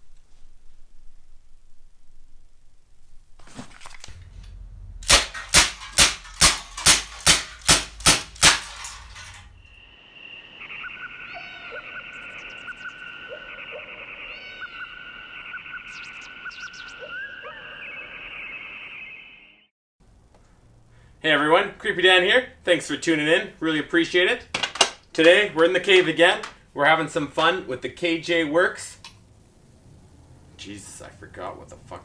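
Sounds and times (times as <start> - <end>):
airsoft pistol shots: 5.0 - 9.4
high tone with chirping glides: 9.0 - 19.7.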